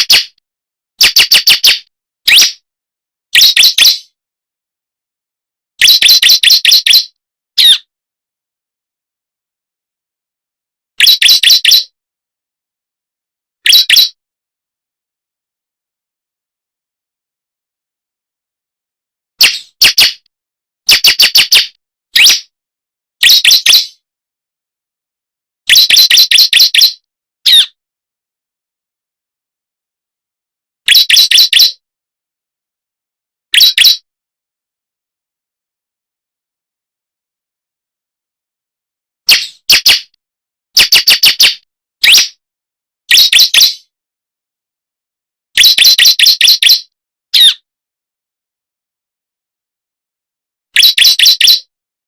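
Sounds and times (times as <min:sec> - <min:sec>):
bird rapid sharp chirps: 0:01.0 - 0:02.6, 0:03.4 - 0:04.2, 0:05.8 - 0:07.9, 0:11.0 - 0:11.9, 0:13.7 - 0:14.2, 0:19.4 - 0:20.2, 0:20.9 - 0:22.5, 0:23.2 - 0:24.0, 0:25.7 - 0:27.8, 0:30.9 - 0:31.8, 0:39.3 - 0:40.2, 0:40.8 - 0:42.4, 0:43.1 - 0:43.9, 0:45.6 - 0:47.6, 0:50.8 - 0:51.6.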